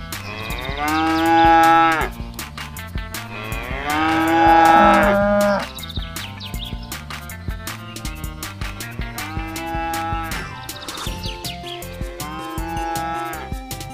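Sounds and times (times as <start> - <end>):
cow mooing: 0.4 - 2.1, 3.4 - 5.7, 9.3 - 10.4.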